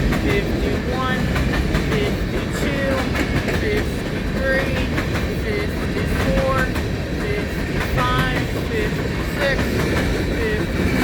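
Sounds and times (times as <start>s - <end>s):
train cars rumbling past: 0.0s - 11.0s.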